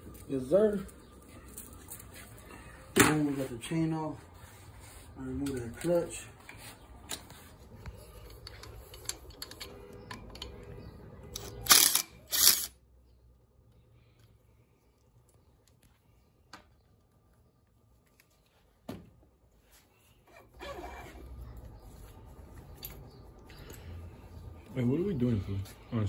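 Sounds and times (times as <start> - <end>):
tools and parts clattering: 7.9 - 12.8.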